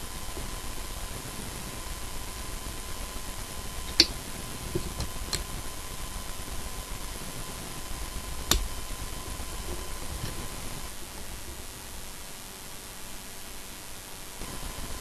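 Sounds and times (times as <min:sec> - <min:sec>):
steady hiss with high tone: 0:00.0 - 0:15.0
clicks and taps of tools: 0:03.9 - 0:05.5, 0:08.5 - 0:08.7.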